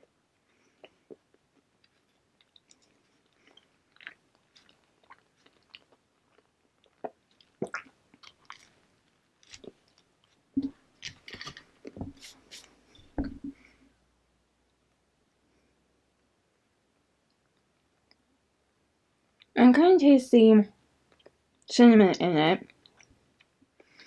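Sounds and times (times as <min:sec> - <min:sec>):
person chewing: 0:00.7 - 0:12.8.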